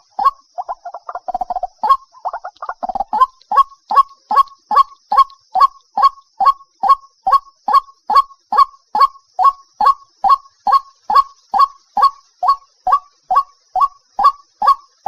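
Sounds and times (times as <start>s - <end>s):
waterhen calling: 0.0s - 15.0s.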